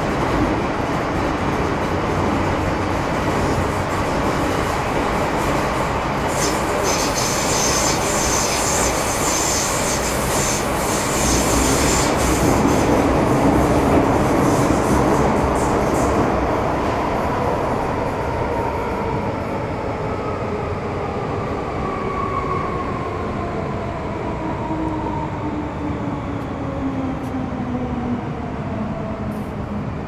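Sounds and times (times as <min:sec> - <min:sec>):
train rumble and rattle: 0:00.0 - 0:30.0
high-pitched squeal: 0:06.3 - 0:12.4.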